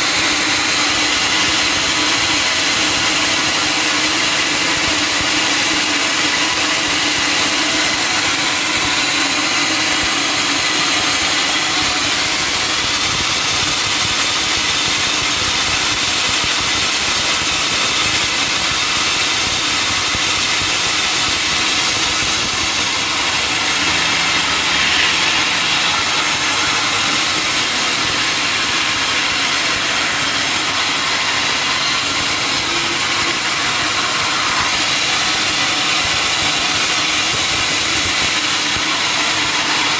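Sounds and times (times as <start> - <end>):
sawmill saw cutting log: 0.0 - 39.9
machine drone: 4.7 - 15.2, 19.3 - 39.9.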